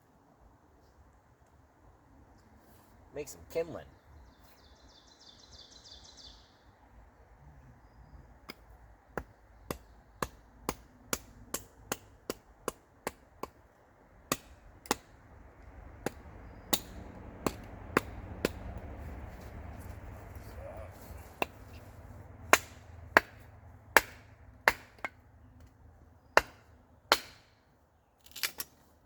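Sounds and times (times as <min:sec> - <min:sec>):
blade chopping wood: 0:14.2 - 0:15.2, 0:16.0 - 0:19.0, 0:22.5 - 0:25.8, 0:26.4 - 0:27.6.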